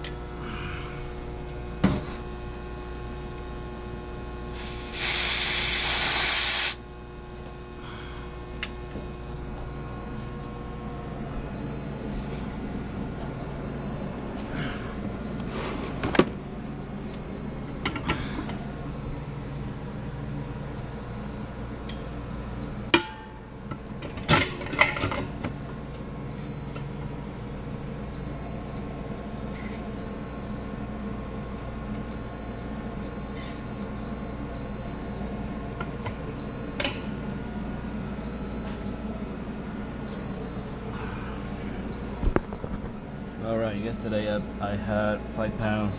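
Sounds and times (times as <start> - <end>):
vacuum pump running: 0.0 - 45.9.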